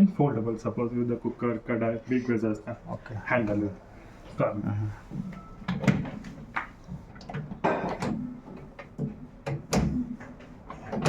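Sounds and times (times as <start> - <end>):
dishes knocking and clattering: 5.2 - 11.0.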